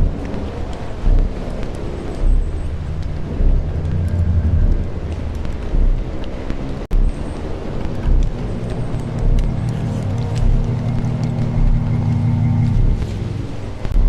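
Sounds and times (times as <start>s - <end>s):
synthesizer noise drone: 0.0s - 14.0s.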